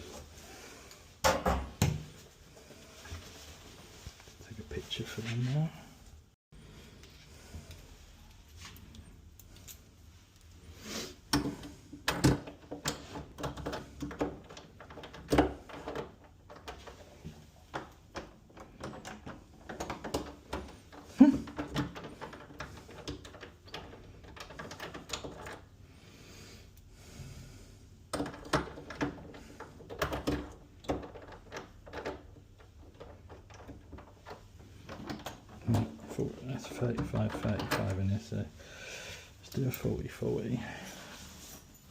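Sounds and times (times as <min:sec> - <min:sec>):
door lock hardware clicking and rattling: 0:12.0 - 0:25.7, 0:28.1 - 0:36.0.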